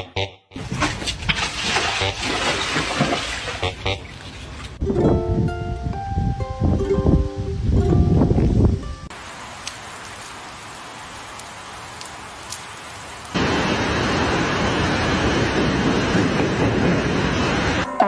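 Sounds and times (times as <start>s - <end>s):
rushing water: 0.6s - 4.8s, 9.1s - 17.9s.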